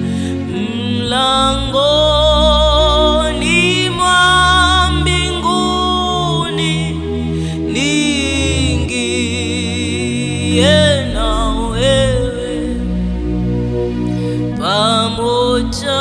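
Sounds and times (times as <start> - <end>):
keyboard chords and bass: 0.0 - 16.0
person singing worship song: 0.0 - 16.0.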